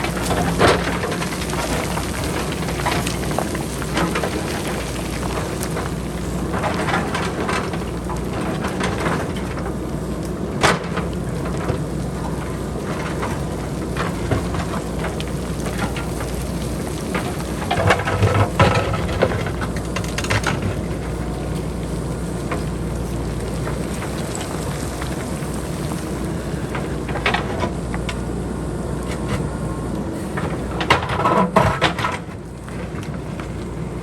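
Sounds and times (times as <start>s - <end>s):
diesel engine running: 0.0s - 34.0s
rocks clattering down hillside: 0.0s - 34.0s.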